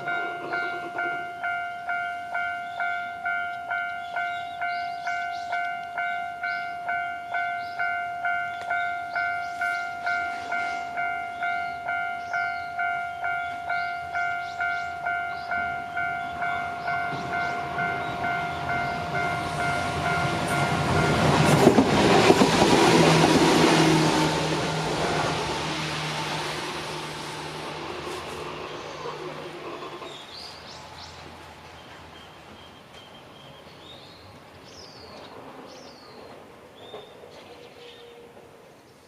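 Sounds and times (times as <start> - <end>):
level-crossing alarm bell dinging: 0.0 - 21.7
electric train rushing past: 0.0 - 39.0
train wheels clacking over rail joints: 20.1 - 25.5.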